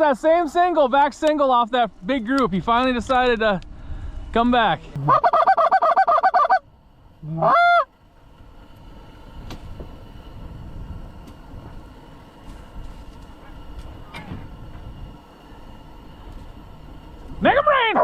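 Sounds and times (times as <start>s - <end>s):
open-air background noise: 0.0s - 18.0s
goose clucks: 5.0s - 6.6s
goose honk: 5.0s - 6.6s, 7.4s - 7.9s.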